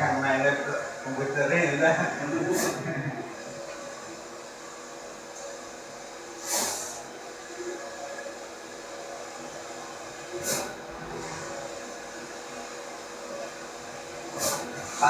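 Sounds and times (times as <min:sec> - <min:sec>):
printer machine hum: 0:00.0 - 0:15.0
brief hiss: 0:06.4 - 0:07.0.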